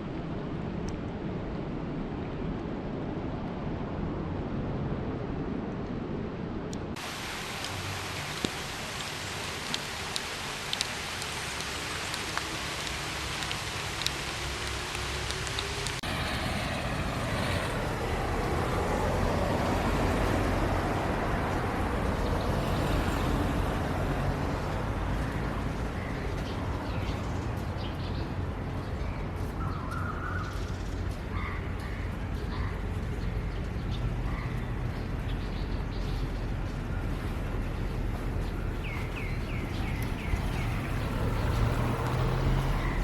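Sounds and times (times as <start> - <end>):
rain hiss: 6.9 - 29.6, 34.8 - 43.0
sharp drip ticks: 7.6 - 16.0, 37.8 - 43.0.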